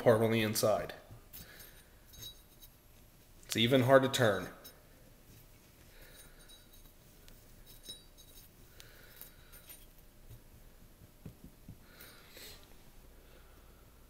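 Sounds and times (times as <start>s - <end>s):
metal wheel hub clinking: 1.4s - 2.8s, 7.6s - 10.0s.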